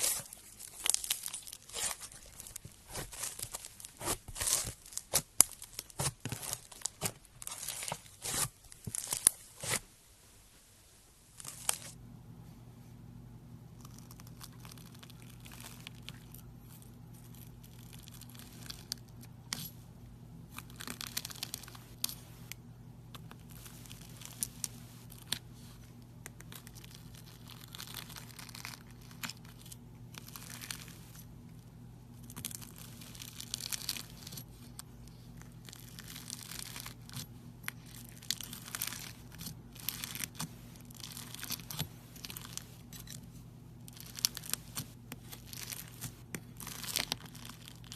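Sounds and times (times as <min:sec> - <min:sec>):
sticky slime crackles and pops: 0:00.0 - 0:09.8, 0:43.9 - 0:47.9
low electrical hum: 0:00.0 - 0:47.9.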